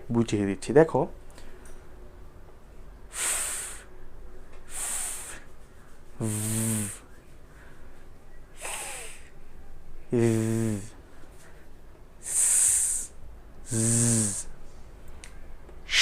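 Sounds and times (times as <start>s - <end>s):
person pronouncing fricative consonants: 6.2s - 7.0s, 10.1s - 11.0s, 12.2s - 14.5s.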